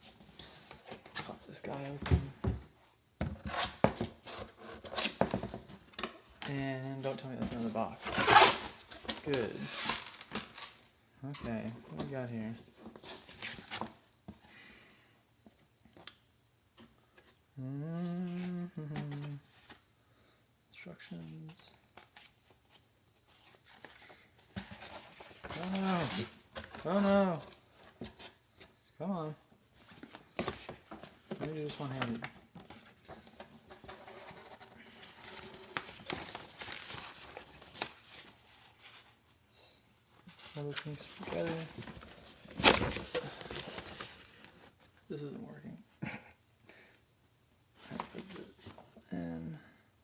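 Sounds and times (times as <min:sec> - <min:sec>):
packaging rustling: 0:07.4 - 0:10.8, 0:29.9 - 0:39.0, 0:40.4 - 0:44.6
man humming: 0:17.6 - 0:19.5.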